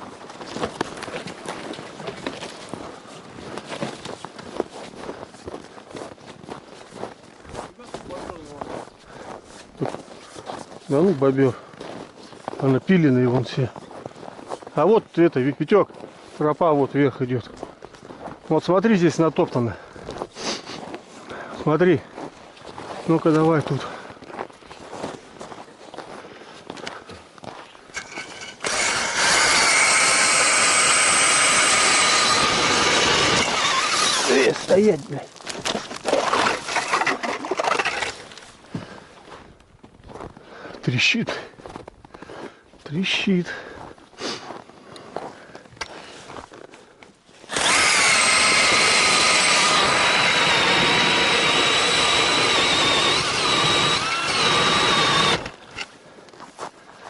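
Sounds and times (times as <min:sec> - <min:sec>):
drill-driven ice auger whining: 0:28.0 - 0:34.8, 0:35.6 - 0:38.2, 0:47.5 - 0:55.9.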